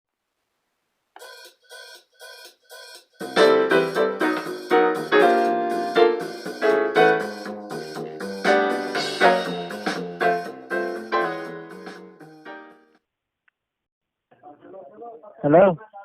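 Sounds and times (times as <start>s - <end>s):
piano keyboard music: 3.2s - 13.0s.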